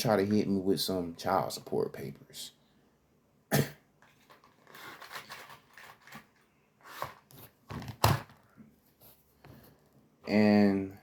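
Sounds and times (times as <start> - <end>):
rustling and handling noises: 4.0 - 10.4.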